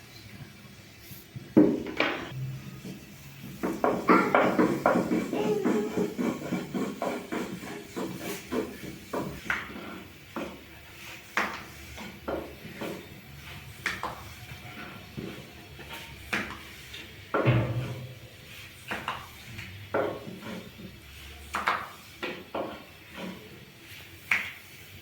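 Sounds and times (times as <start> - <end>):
cookware and utensils knocking: 1.6 - 7.2.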